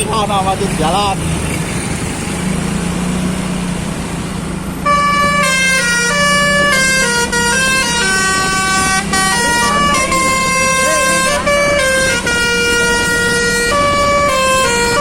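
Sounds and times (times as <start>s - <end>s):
low engine hum: 0.0s - 15.0s
musical bus air horn tune: 4.8s - 15.0s.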